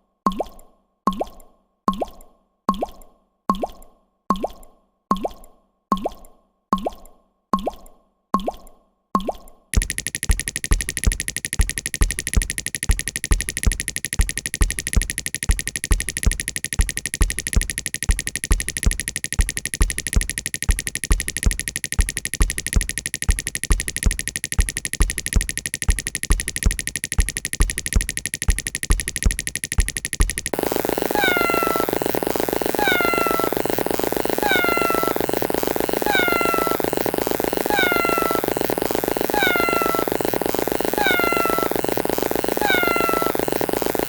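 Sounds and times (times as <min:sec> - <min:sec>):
rapid water drop sound effect: 0:09.8 - 0:30.6.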